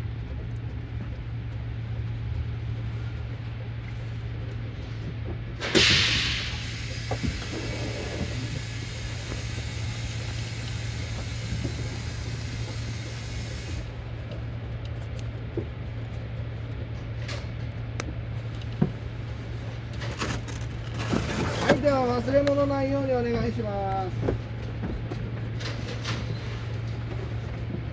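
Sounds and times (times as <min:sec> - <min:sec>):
bus engine idling: 0:00.0 - 0:27.9
compressed air hissing: 0:05.6 - 0:14.1.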